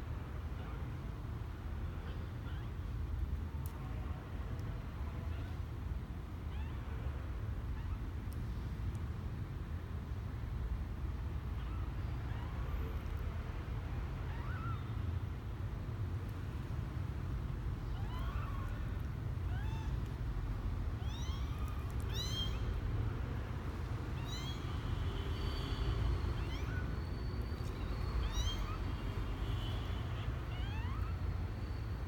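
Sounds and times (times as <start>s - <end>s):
kittens mewing: 20.9s - 25.2s, 25.8s - 31.7s.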